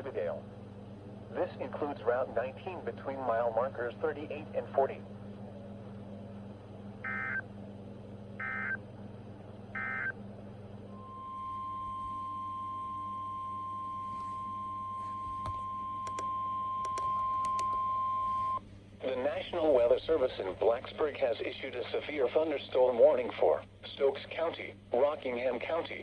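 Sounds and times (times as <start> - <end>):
steady warning alarm tone: 7.0 - 7.4, 8.4 - 8.8, 9.8 - 10.2, 10.9 - 18.6.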